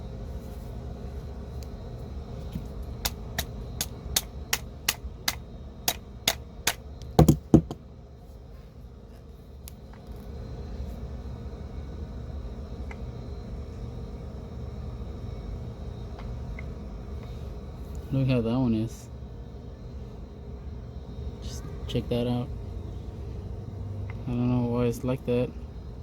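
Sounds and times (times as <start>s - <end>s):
steady low hum: 0.0s - 26.0s
heavier knocks: 7.2s - 7.8s.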